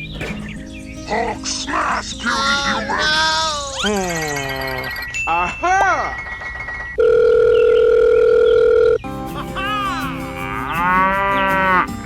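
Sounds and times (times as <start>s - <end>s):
background music with held notes: 0.0s - 3.5s, 9.0s - 12.0s.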